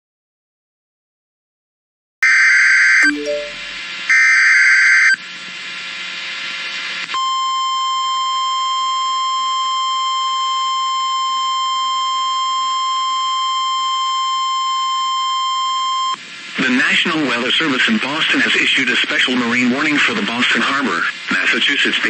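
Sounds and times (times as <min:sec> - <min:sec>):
steady alert tone: 0:03.0 - 0:03.8
radio hiss: 0:16.5 - 0:22.0.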